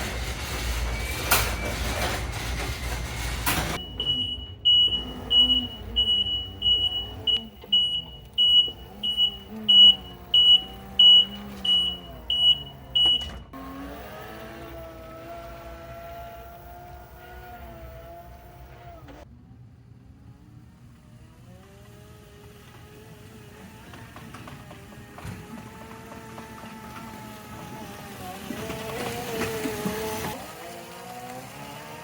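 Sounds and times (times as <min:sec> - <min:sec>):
electronic warning beep: 0:03.8 - 0:13.5
electric motor whine: 0:13.6 - 0:19.2.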